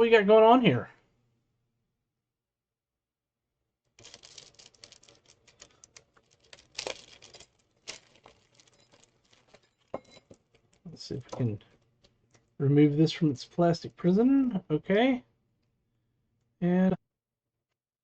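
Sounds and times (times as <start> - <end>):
plastic crinkling and rustling: 4.0 - 12.5.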